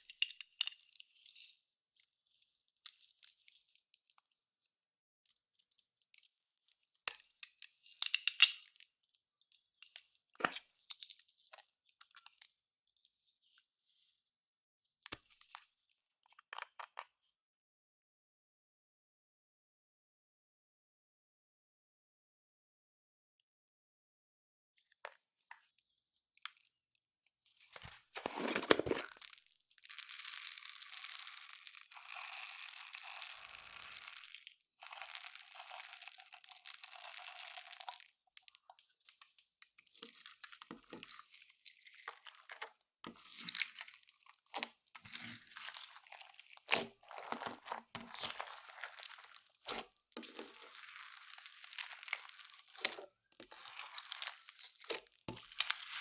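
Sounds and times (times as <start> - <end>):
slime crackling and tearing: 29.0 - 38.2, 43.2 - 56.0.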